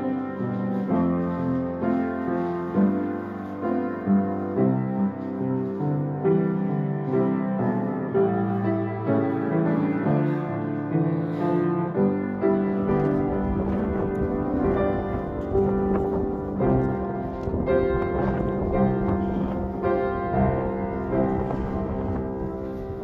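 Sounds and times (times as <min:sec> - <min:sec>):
piano background music: 0:00.0 - 0:23.0.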